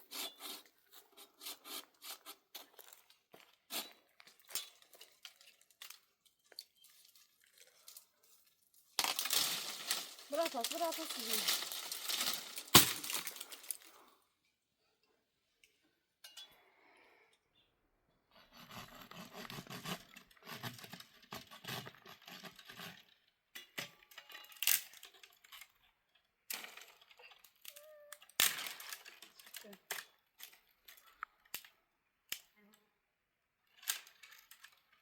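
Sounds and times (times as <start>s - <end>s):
small hard objects clinking: 4.4s - 14.0s.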